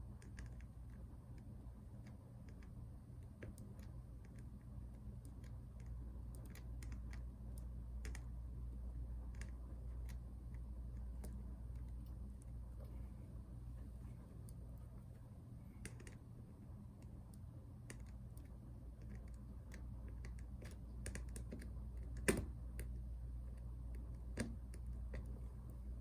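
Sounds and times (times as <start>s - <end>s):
steady low hum: 0.0s - 26.0s.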